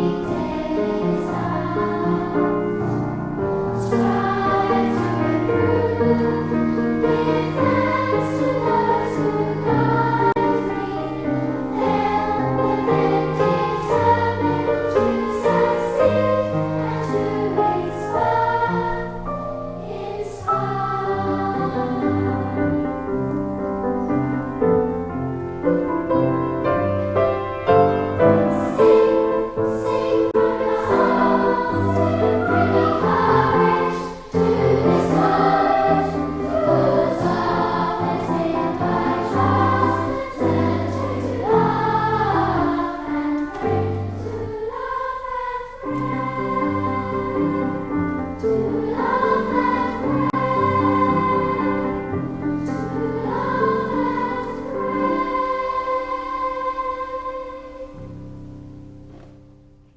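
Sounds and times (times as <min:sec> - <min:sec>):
instrumental accompaniment: 0:00.0 - 0:45.0
choir singing a hymn: 0:00.0 - 0:59.3.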